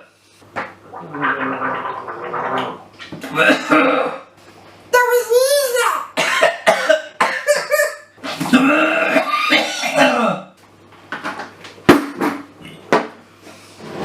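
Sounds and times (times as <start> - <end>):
strained vocal noises: 0.8 - 2.9
person coughing: 3.3 - 4.3, 6.2 - 10.5.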